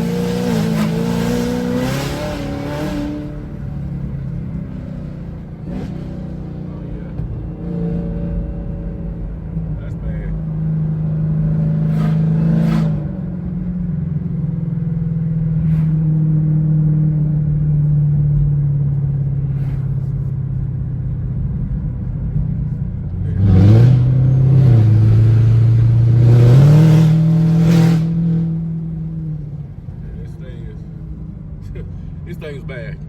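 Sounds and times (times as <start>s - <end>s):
car engine exhaust revving: 0.0s - 33.0s.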